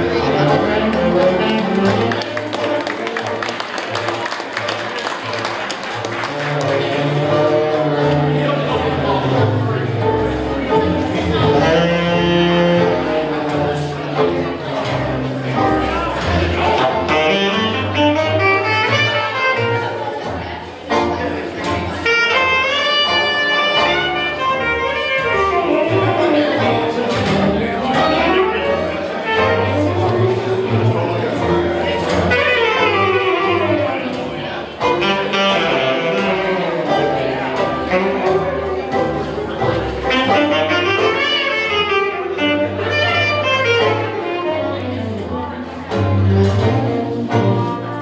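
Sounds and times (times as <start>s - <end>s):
jazz band playing: 0.0s - 48.0s.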